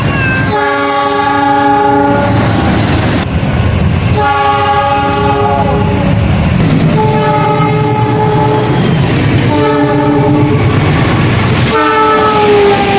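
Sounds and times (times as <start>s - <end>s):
train rumble: 0.0s - 12.9s
locomotive air horn blasts: 0.5s - 2.4s, 4.2s - 6.1s, 6.9s - 8.8s, 9.4s - 10.6s, 11.6s - 12.9s.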